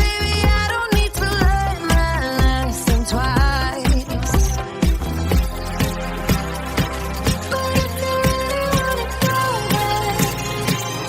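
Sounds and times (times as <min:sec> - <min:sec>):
low kick drum: 0:00.0 - 0:06.0
dance-pop instrumental music: 0:00.0 - 0:11.0.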